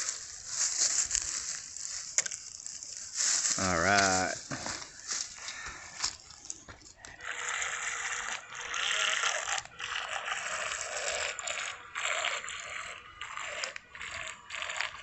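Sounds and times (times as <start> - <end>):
toy boat electric motor buzzing: 7.0 - 15.0.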